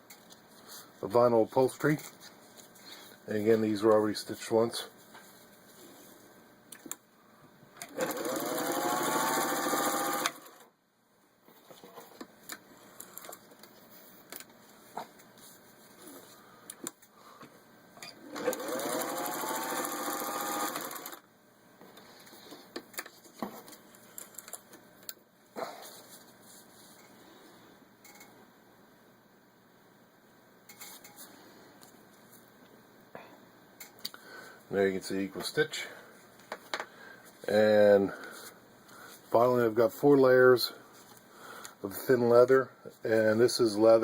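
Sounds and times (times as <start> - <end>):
sewing machine stitching: 7.9 - 10.6, 18.2 - 21.2.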